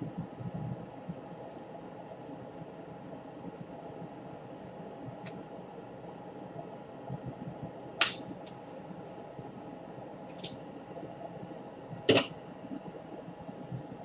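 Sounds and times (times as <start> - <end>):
steady low hum: 0.0 - 14.0
sharp bench-work noises: 8.0 - 8.2, 12.1 - 12.3.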